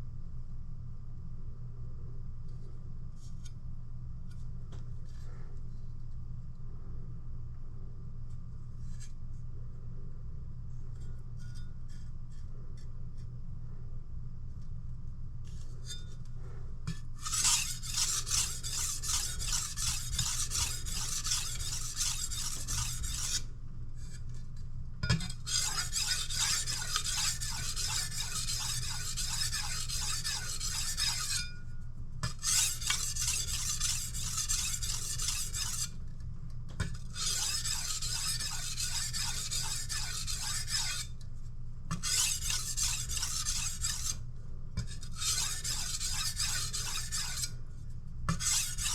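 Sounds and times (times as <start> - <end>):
knife sharpening on stone: 16.9 - 23.4, 25.1 - 31.6, 32.2 - 35.9, 37.2 - 41.1, 41.9 - 44.2, 44.8 - 47.5, 48.3 - 48.9.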